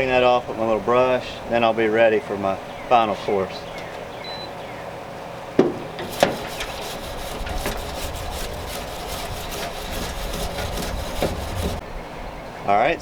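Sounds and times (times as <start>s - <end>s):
sharp knocks: 5.6s - 11.8s
grill brush scrubbing grates: 6.0s - 11.8s.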